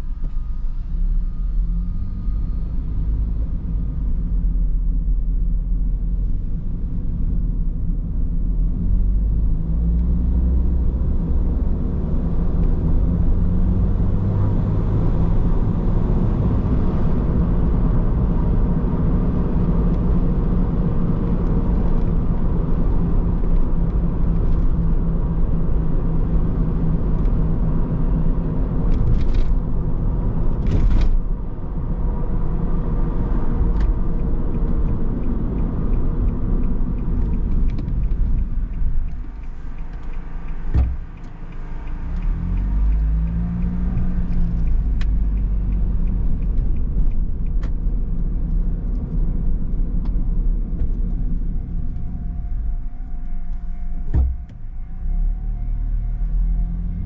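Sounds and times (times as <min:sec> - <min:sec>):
car engine and road noise: 0:00.0 - 0:57.0.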